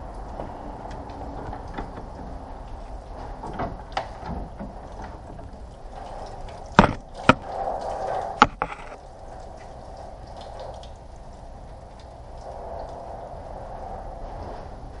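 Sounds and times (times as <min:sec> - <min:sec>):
steady background noise: 0:00.0 - 0:15.0
sharp knocks and clunks: 0:06.8 - 0:07.5, 0:08.4 - 0:09.0.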